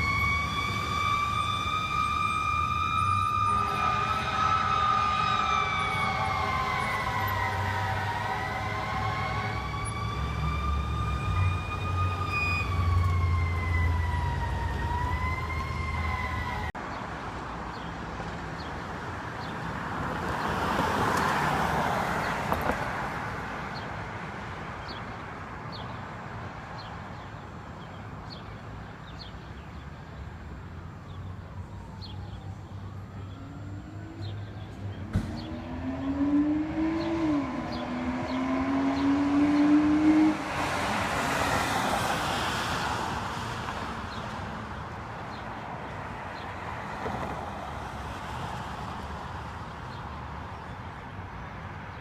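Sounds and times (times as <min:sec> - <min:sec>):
fire truck siren wailing: 0:00.0 - 0:16.8, 0:30.8 - 0:44.1
rushing vehicle noise: 0:00.0 - 0:52.0.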